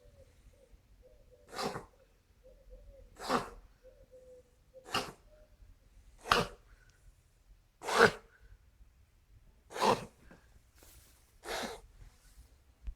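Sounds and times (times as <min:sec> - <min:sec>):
dog snorting through the nose: 0:01.5 - 0:01.9, 0:03.2 - 0:03.6, 0:04.8 - 0:05.2, 0:06.2 - 0:06.6, 0:07.8 - 0:08.2, 0:09.7 - 0:10.4, 0:11.4 - 0:11.9.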